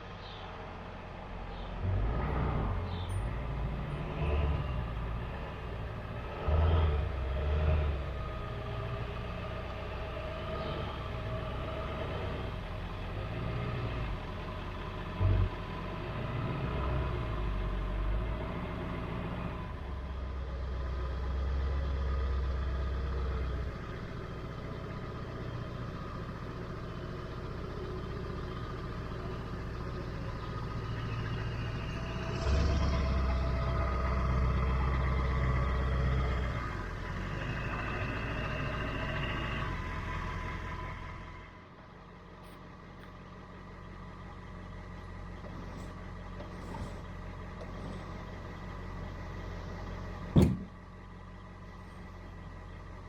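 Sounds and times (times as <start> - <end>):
engine running low rumble: 0.0 - 53.0
short loud knocks: 50.4 - 50.7.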